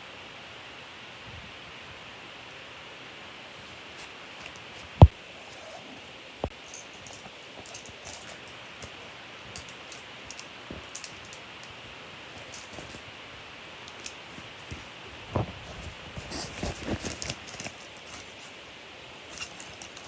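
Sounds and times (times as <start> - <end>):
steady hiss: 0.0 - 20.0
small clicks and rustles: 3.6 - 5.7, 6.4 - 13.1, 13.7 - 20.0.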